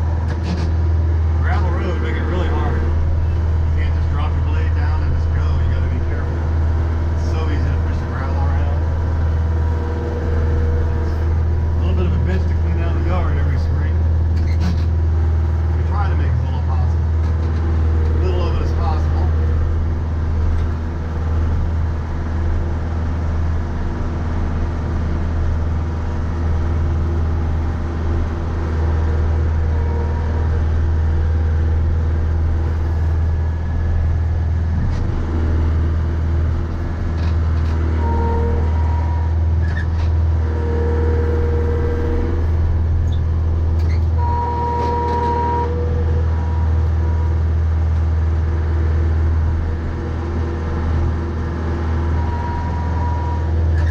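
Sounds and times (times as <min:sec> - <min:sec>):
tractor diesel engine droning: 0:00.0 - 0:53.9
high-pitched whines: 0:52.0 - 0:53.9.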